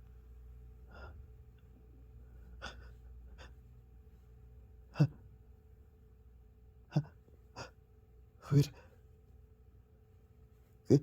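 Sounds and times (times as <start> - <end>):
person breathing softly: 0.8 - 1.3.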